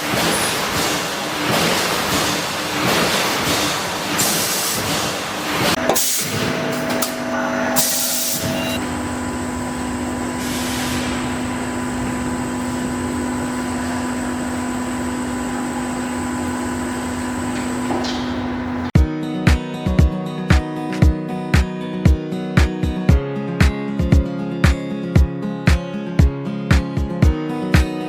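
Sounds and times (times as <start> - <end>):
machine hum: 5.5 - 19.0
short air hisses: 10.4 - 11.3.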